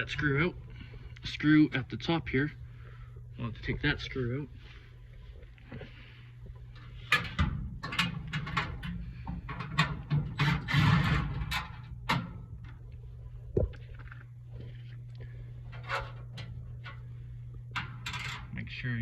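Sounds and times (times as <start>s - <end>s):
steady low hum: 0.0s - 19.0s
metal clicks and scraping: 6.7s - 12.9s, 15.6s - 18.6s.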